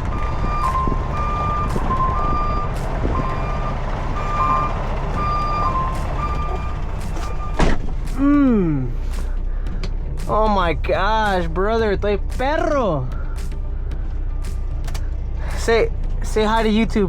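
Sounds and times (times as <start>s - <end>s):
backup alarms beeping: 0.0s - 7.8s
truck engine drone: 0.0s - 17.0s
falling voice-like moan: 8.2s - 9.0s.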